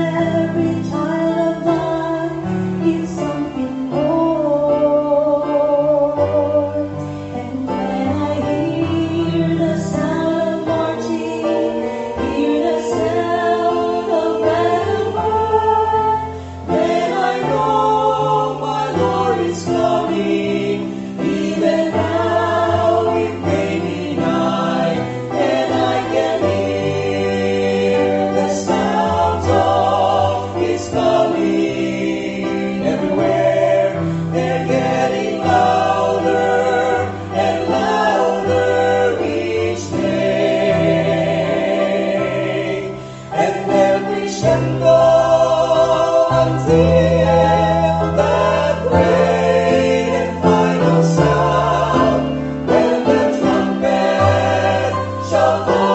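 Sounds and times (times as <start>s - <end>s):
vocal quartet singing in harmony: 0.0s - 55.9s.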